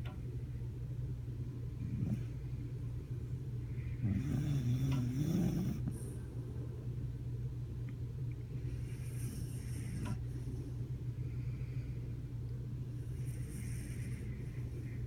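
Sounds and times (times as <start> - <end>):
dog snoring: 1.8 - 2.4, 4.0 - 6.2, 8.7 - 10.7, 13.0 - 14.7.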